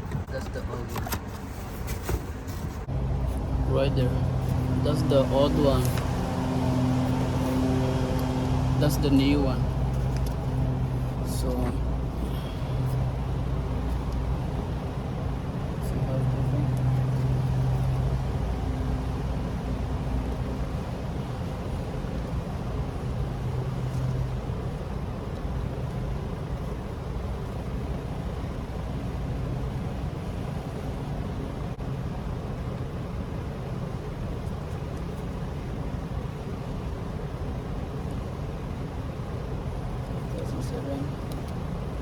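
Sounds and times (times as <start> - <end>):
low mechanical rumble: 0.0 - 42.0
low hum: 2.6 - 32.7.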